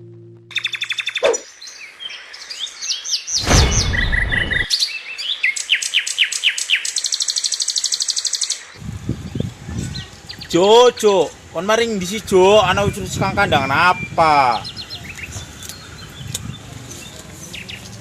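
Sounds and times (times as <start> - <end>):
songbirds chirping: 0.5 - 18.0
rush of low noise: 3.4 - 4.7.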